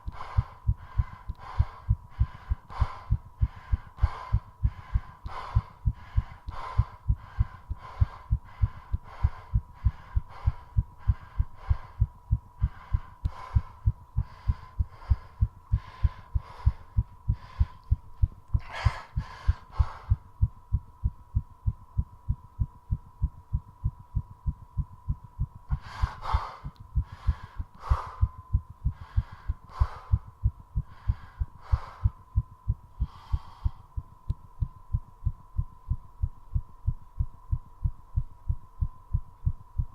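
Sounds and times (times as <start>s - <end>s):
heavy breathing: 0.0s - 20.3s, 25.7s - 32.2s, 33.0s - 34.0s
fast heartbeat thudding: 0.0s - 39.9s.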